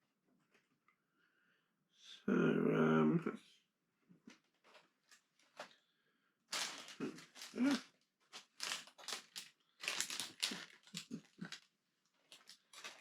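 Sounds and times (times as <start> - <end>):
plastic bricks clattering: 6.5 - 13.0.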